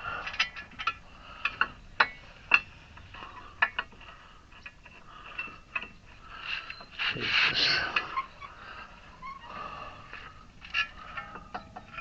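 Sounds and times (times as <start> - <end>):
metal parts and tools clinking: 0.2 - 8.6, 10.0 - 12.0.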